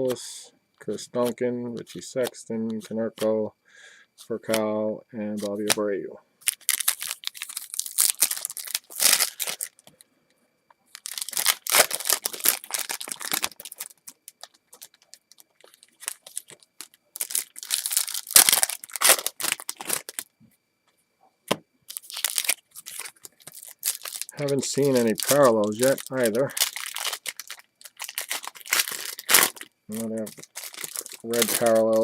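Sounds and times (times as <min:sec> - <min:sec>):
card pack wrapper crinkling: 0:05.4 - 0:05.8, 0:06.4 - 0:09.9, 0:10.9 - 0:20.3, 0:21.9 - 0:32.0.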